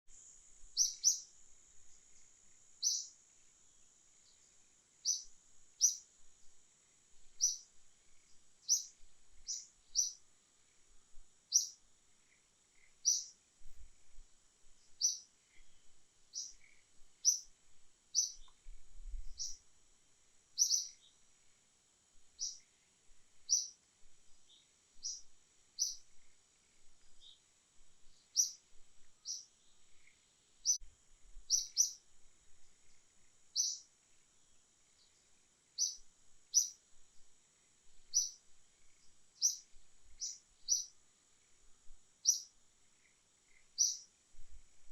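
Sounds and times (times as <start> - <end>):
insect drone: 0.1 - 44.9
bird chirping: 0.7 - 6.1, 7.1 - 13.5, 14.8 - 19.7, 20.6 - 21.3, 22.3 - 22.8, 23.4 - 30.8, 31.4 - 32.0, 32.6 - 34.0, 34.9 - 36.8, 38.0 - 41.6, 42.2 - 44.1.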